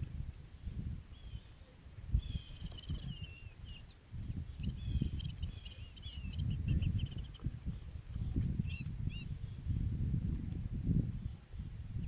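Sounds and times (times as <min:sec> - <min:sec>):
small bird chirps: 0:02.2 - 0:07.5, 0:08.2 - 0:09.6.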